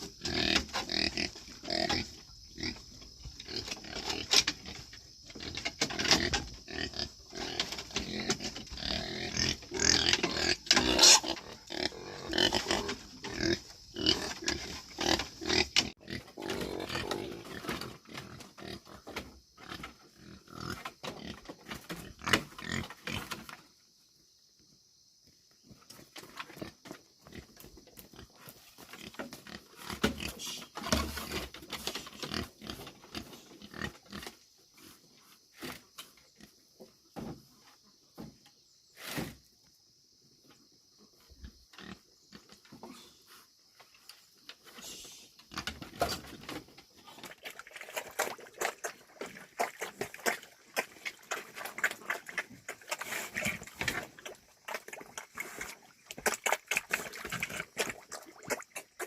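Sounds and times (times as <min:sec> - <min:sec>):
pigs grunting: 0:00.1 - 0:19.0.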